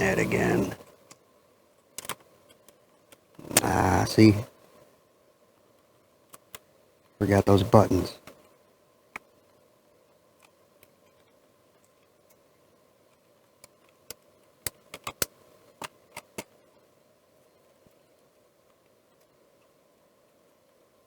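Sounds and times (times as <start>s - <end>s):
plastic parts clicking: 2.0s - 3.2s, 13.6s - 16.5s.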